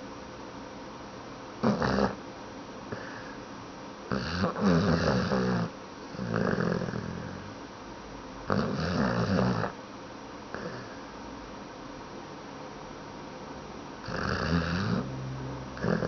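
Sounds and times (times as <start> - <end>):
person snoring: 1.6 - 2.2, 4.1 - 7.5, 10.5 - 11.0, 14.0 - 16.0.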